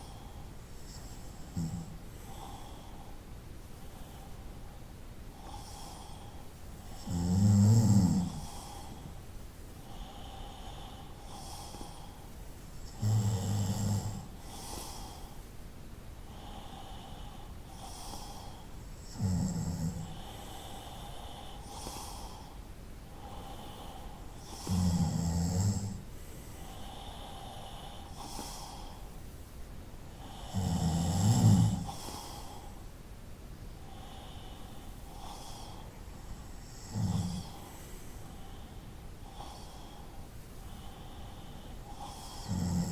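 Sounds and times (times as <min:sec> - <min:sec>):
soft breathing: 0:00.0 - 0:42.9
person snoring: 0:00.8 - 0:02.8, 0:06.9 - 0:09.1, 0:12.8 - 0:15.2, 0:16.3 - 0:22.5, 0:23.2 - 0:29.0, 0:30.2 - 0:32.8, 0:33.9 - 0:38.6, 0:40.7 - 0:42.9.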